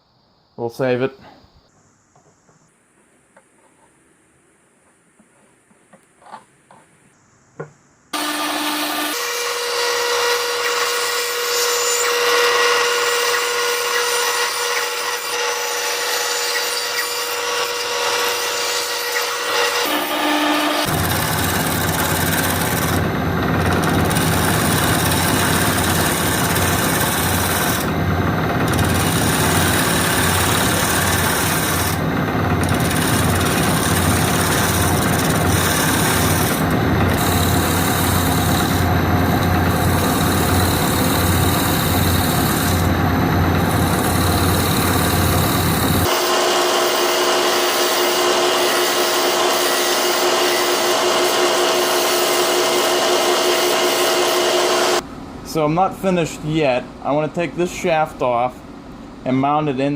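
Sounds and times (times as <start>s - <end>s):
turning tool cutting wood: 8.2s - 55.0s
wood lathe humming: 8.2s - 55.0s
high motor whine: 19.4s - 55.0s.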